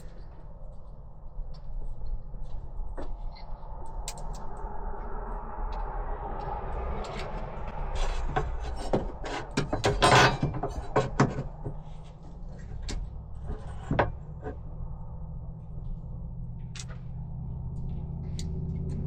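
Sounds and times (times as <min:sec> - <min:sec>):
steady low hum: 0:00.0 - 0:19.0
handling wooden pieces and hardware: 0:08.0 - 0:14.6.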